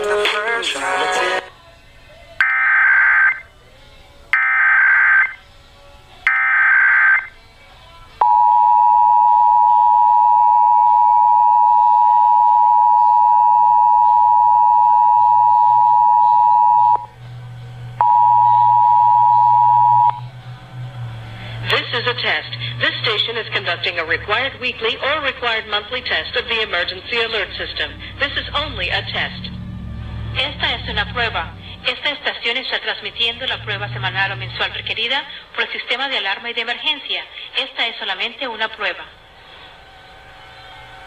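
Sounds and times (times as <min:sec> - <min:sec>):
two-tone attention signal: 0:08.2 - 0:17.1, 0:18.0 - 0:20.4.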